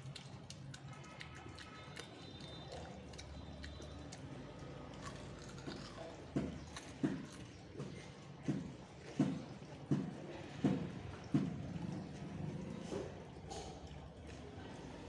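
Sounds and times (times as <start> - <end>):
person chewing raw potato: 0.0 - 9.4.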